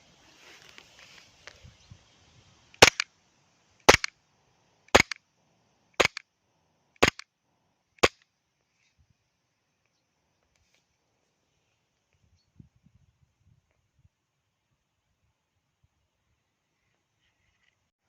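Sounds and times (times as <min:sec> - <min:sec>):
airsoft pistol shots: 0:02.8 - 0:03.0, 0:03.9 - 0:04.1, 0:04.9 - 0:05.2, 0:06.0 - 0:06.2, 0:07.0 - 0:07.2.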